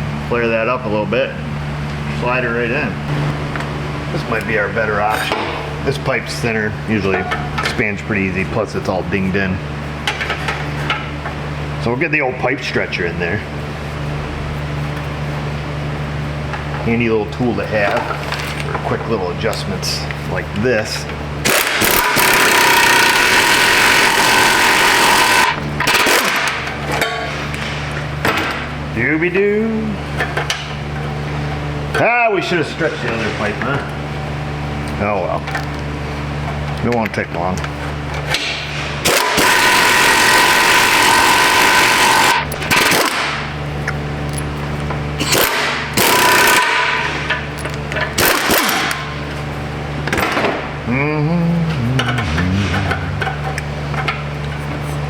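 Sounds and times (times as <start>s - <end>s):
steady low hum: 0.0s - 55.0s
air impact wrench running: 21.4s - 27.3s, 38.3s - 43.6s, 45.2s - 49.6s.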